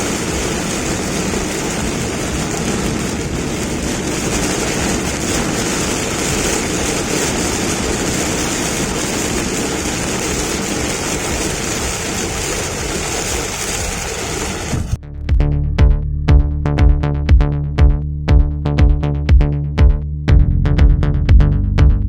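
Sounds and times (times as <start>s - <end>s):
rain and tyre noise on wet road: 0.0s - 15.0s
low road and engine rumble: 0.0s - 22.0s.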